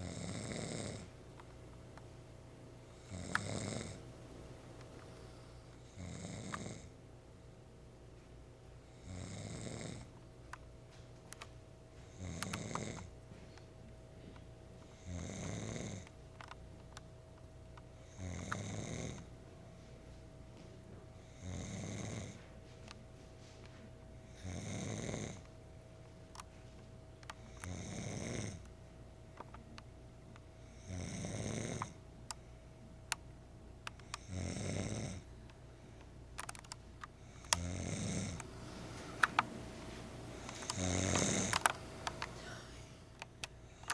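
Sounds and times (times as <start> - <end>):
person snoring: 0.0 - 1.1, 3.0 - 4.0, 37.5 - 43.0.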